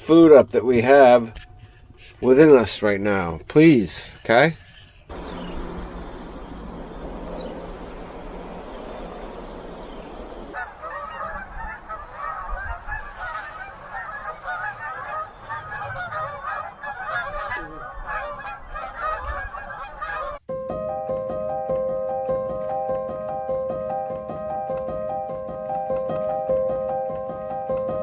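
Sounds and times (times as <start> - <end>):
rushing noise with low hum: 5.1 - 13.2
geese honking: 5.1 - 28.0.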